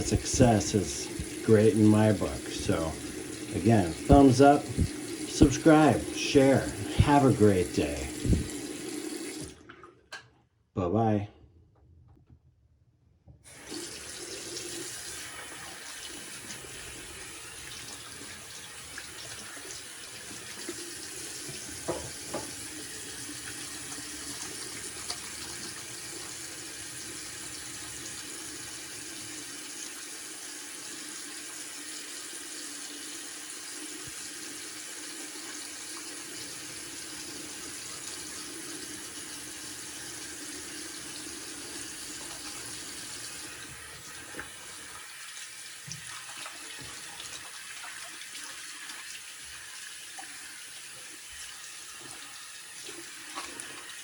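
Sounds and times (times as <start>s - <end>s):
faucet running into sink: 0.0s - 9.9s, 13.5s - 54.0s.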